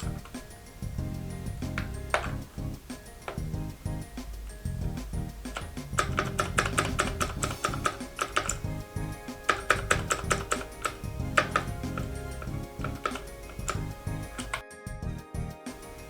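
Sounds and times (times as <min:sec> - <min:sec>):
background music: 0:00.0 - 0:16.0
mechanical keyboard typing: 0:05.5 - 0:14.6.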